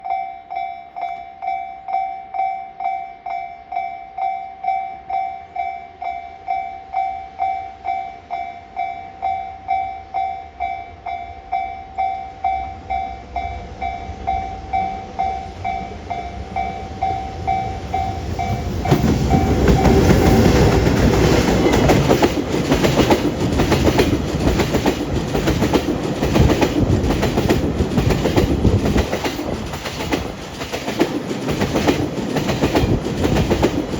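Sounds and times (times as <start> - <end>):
level-crossing warning bell: 0.0 - 30.8
freight train running: 7.2 - 33.9
wheels clattering over rail joints: 18.2 - 33.9.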